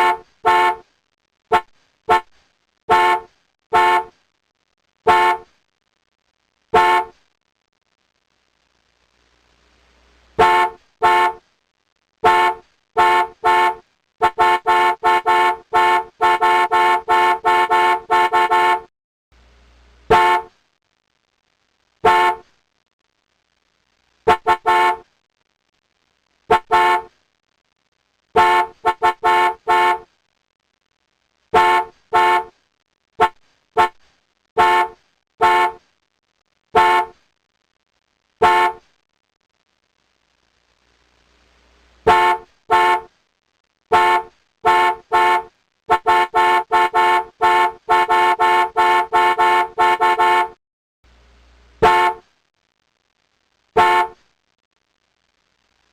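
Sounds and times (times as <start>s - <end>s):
car horn beeping: 0.0s - 0.8s, 1.5s - 2.3s, 2.9s - 4.1s, 5.1s - 5.4s, 6.8s - 7.1s, 10.4s - 11.4s, 12.2s - 18.9s, 20.1s - 20.5s, 22.0s - 22.4s, 24.3s - 25.0s, 26.5s - 27.1s, 28.4s - 30.0s, 31.6s - 32.5s, 33.2s - 34.0s, 34.6s - 35.8s, 36.8s - 37.1s, 38.4s - 38.8s, 42.1s - 43.1s, 43.9s - 50.6s, 51.8s - 52.2s, 53.8s - 54.2s.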